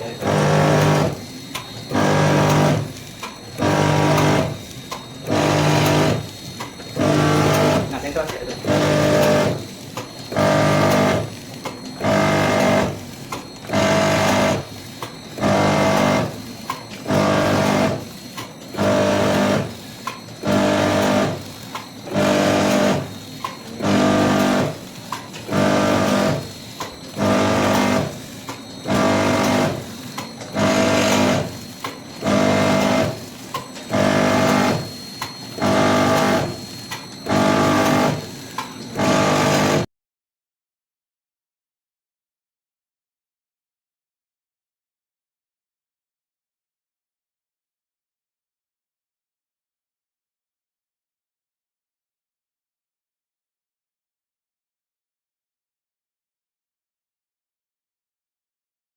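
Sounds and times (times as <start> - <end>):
small machine clicks: 0.0 - 39.8
packaging machine motor hum: 0.0 - 39.9.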